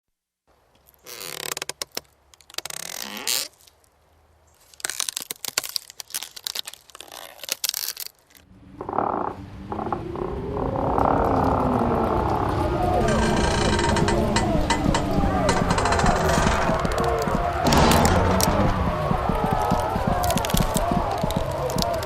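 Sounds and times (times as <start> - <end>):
crackling crunching noise: 0.5 - 22.0
low rough growling: 8.5 - 22.0.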